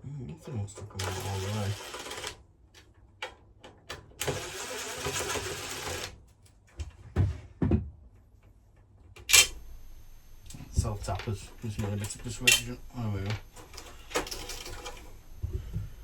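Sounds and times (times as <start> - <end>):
power drill running: 4.2 - 6.1, 9.4 - 16.0
sharp metallic click: 9.2 - 9.8
dull thumps: 15.2 - 16.0.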